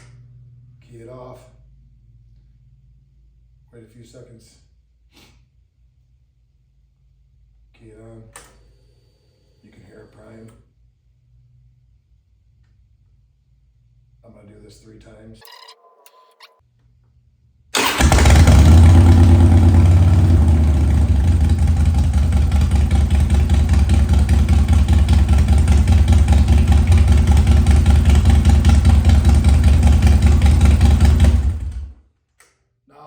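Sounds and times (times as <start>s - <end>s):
motorcycle engine starting and idling: 17.8s - 31.9s.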